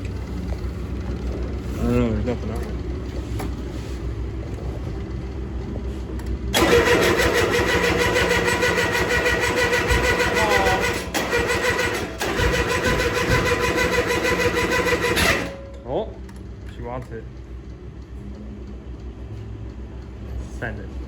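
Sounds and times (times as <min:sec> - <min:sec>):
low engine rumble: 0:00.0 - 0:14.8, 0:15.4 - 0:21.0
diesel mower engine starting: 0:05.9 - 0:16.0.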